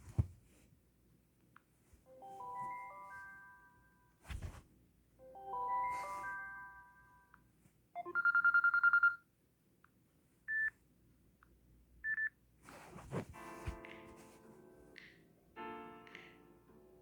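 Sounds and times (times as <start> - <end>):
phone ringtones: 8.0 - 9.2.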